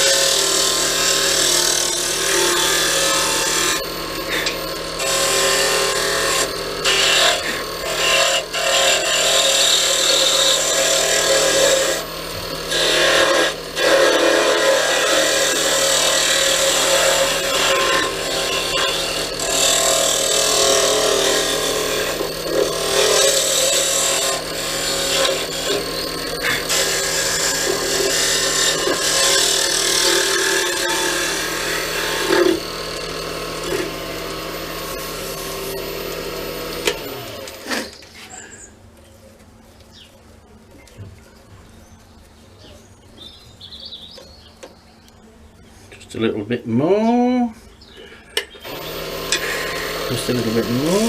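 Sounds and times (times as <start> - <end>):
lathe motor hum: 0.0 - 38.0, 48.6 - 51.0
tool scraping wood on lathe: 0.0 - 38.6, 48.6 - 51.0.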